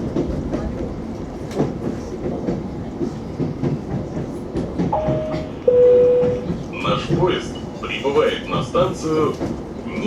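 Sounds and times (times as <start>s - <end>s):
two-note falling chime: 5.0s - 6.5s.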